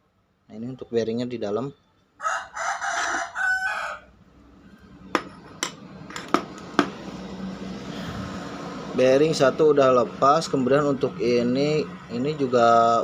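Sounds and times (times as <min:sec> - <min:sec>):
rooster crowing: 0:02.2 - 0:05.4.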